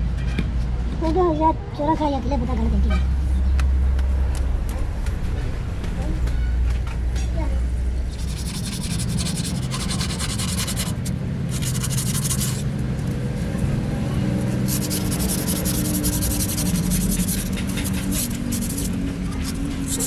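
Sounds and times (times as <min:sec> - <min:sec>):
low machine hum: 0:07.4 - 0:20.0
abrasive sanding: 0:08.1 - 0:12.7, 0:14.6 - 0:20.0.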